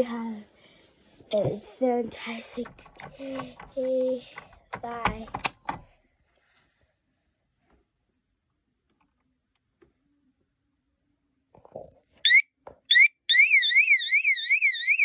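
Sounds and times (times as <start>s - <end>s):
warbling fire alarm tone: 12.3s - 15.0s.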